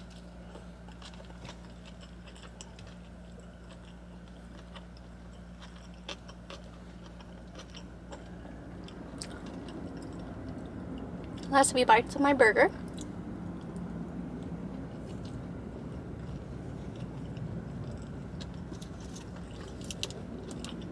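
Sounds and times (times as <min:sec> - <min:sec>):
close-up chewing: 0:00.0 - 0:11.5, 0:12.8 - 0:20.9
steady low hum: 0:00.0 - 0:20.9.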